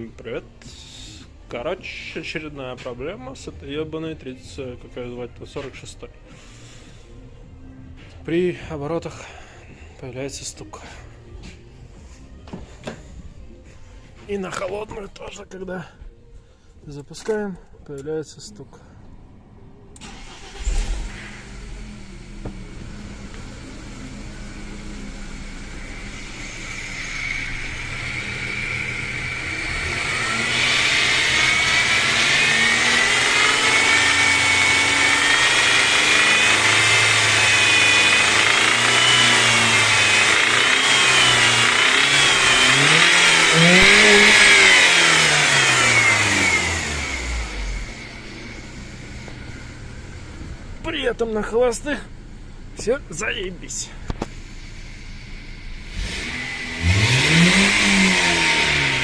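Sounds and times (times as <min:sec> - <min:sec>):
car engine revving: 0:20.0 - 0:59.0.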